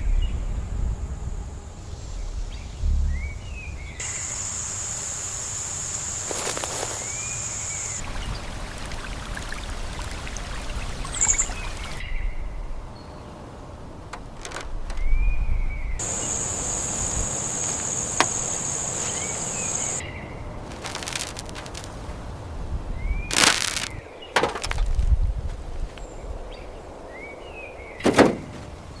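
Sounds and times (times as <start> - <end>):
low rumble of wind: 0.0 - 4.1, 8.0 - 29.0
birds chirping: 3.6 - 12.2, 14.5 - 21.9
high-pitched insect buzz: 4.0 - 8.0, 16.0 - 20.0, 20.7 - 21.9.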